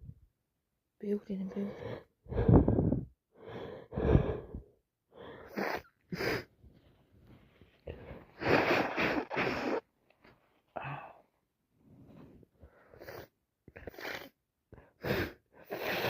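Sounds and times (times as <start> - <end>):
woman gasping breaths: 1.7 - 6.5.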